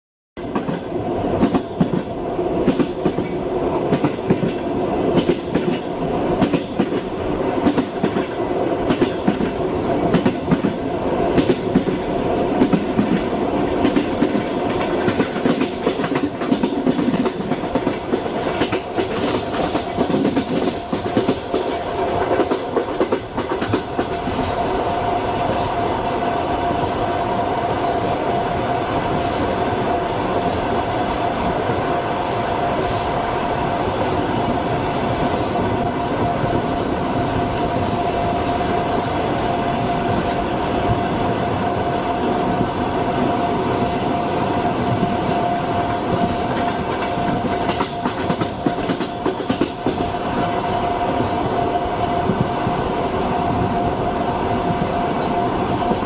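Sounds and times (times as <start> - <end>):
train wheels clattering on rails: 0.4 - 24.7, 34.0 - 53.8
train rumble: 0.4 - 56.0.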